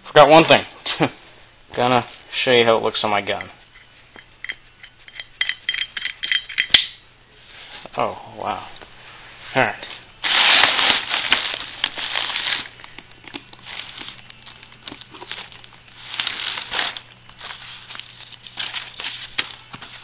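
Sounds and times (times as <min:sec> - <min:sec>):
packaging rustling and crinkling: 0:10.2 - 0:20.0.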